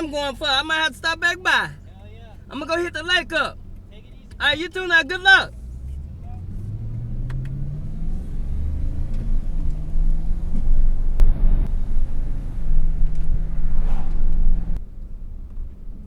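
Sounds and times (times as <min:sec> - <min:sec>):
heavy road rumble: 0:00.0 - 0:16.0
car engine accelerating: 0:03.6 - 0:16.0.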